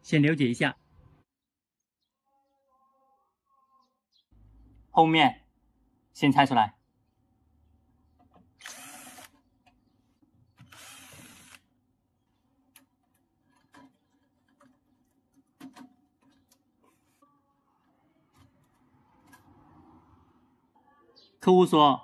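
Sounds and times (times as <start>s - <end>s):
power drill running: 8.6s - 9.3s, 10.6s - 11.6s
parts clicking and knocking: 12.6s - 16.8s.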